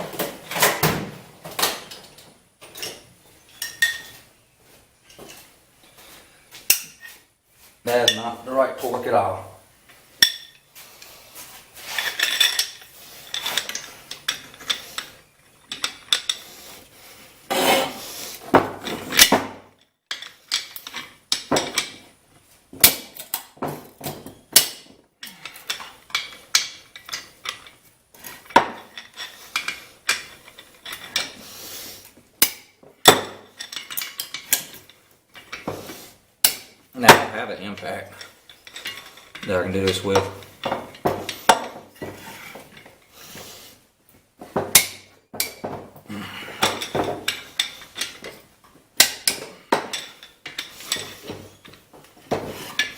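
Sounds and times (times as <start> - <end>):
metal tools clinking on engine: 1.8 - 4.2, 11.9 - 16.5, 37.0 - 42.0
tool rubbing scrapes: 16.4 - 18.5, 42.0 - 43.8.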